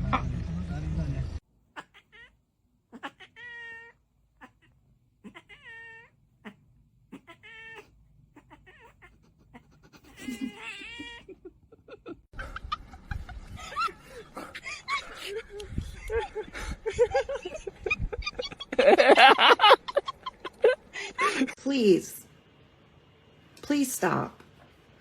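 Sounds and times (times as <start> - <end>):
cat meowing: 1.8 - 2.3, 2.9 - 9.2.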